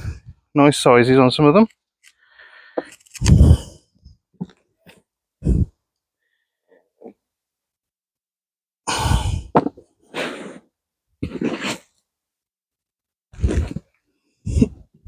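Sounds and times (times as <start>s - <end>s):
person puffing breath: 2.3s - 3.8s, 5.4s - 5.8s, 8.9s - 11.8s, 14.4s - 14.9s.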